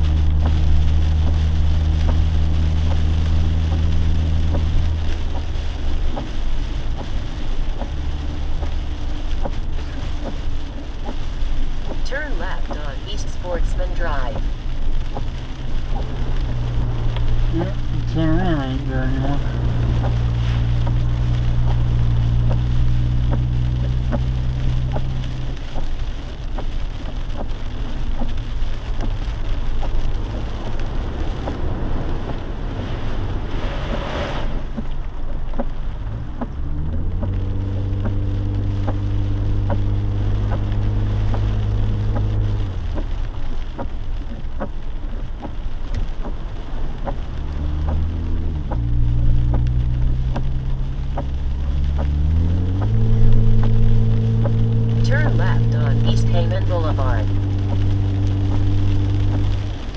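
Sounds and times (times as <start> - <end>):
car engine drone: 0.0 - 59.9
rain and road noise: 0.0 - 59.9
raindrop ticks: 0.0 - 59.9
brief whoosh: 32.6 - 34.7.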